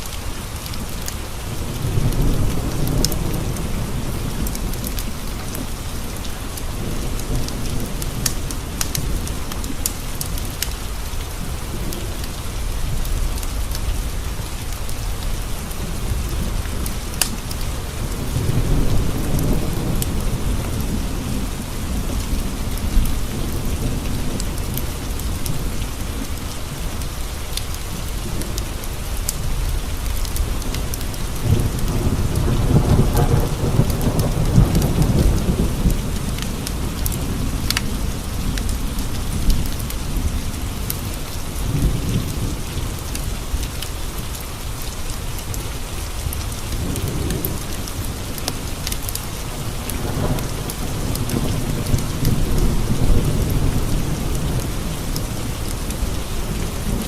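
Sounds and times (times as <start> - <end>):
rain pattering on windows: 0.0 - 57.0
wood fire crackling: 4.4 - 11.4, 14.6 - 18.3.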